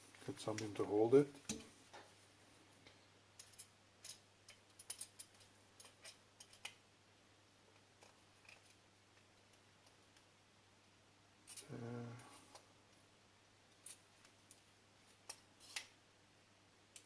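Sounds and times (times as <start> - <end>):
faint steady hum: 0.0 - 17.0
small tools clicking and tapping: 3.4 - 6.8.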